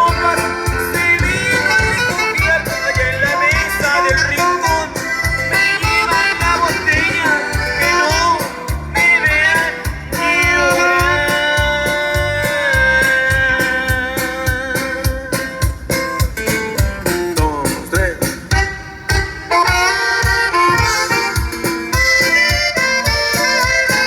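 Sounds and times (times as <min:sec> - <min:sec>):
person singing: 0:00.0 - 0:15.8
rock band playing: 0:00.0 - 0:24.0.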